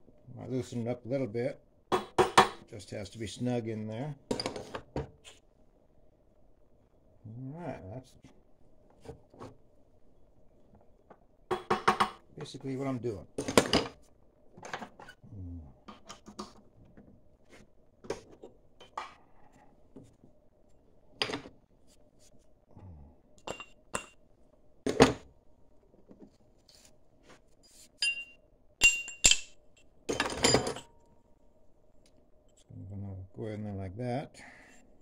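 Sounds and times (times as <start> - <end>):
metal tools clinking and knocking: 23.4 - 24.2, 28.0 - 31.0.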